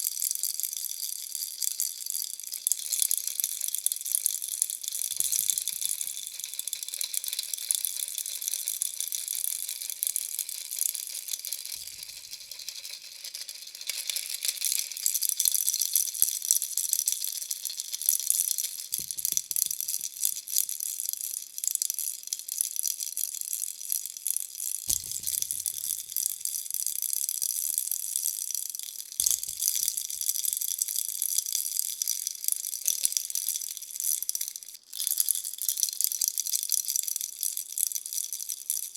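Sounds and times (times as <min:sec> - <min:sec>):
baby rattle shaken: 0:05.0 - 0:20.8, 0:24.9 - 0:26.8, 0:29.2 - 0:31.6.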